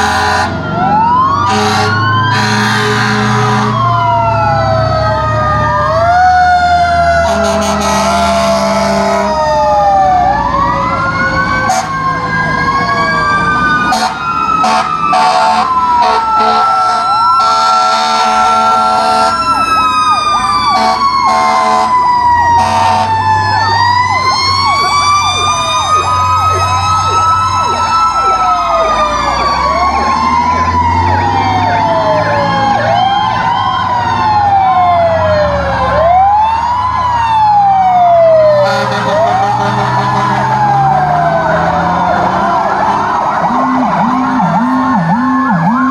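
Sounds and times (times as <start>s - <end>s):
fire truck sirens wailing: 0.0s - 45.9s
short loud horn blasts: 1.5s - 3.8s.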